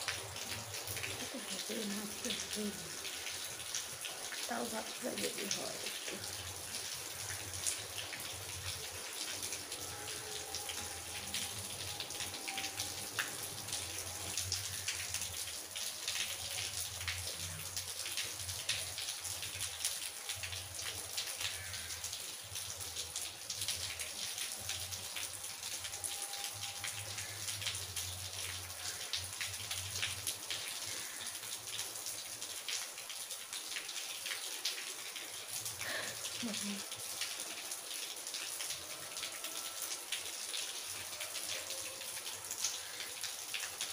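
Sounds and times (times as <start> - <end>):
rain patter: 0.0 - 43.9.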